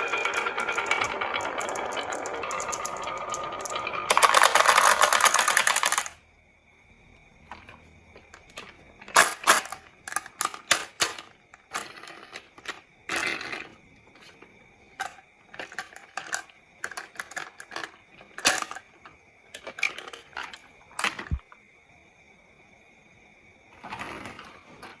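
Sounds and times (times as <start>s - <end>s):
marbles clattering down wooden run: 0.0s - 6.2s, 15.0s - 21.4s.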